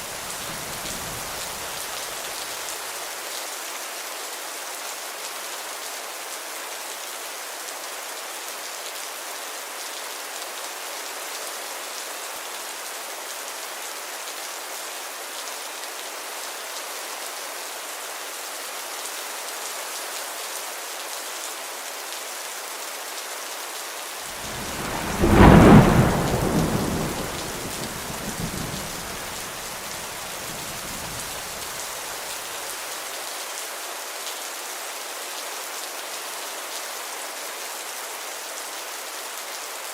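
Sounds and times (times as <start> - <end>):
heavy rain: 0.0 - 39.9
thunder rumble: 24.4 - 31.8.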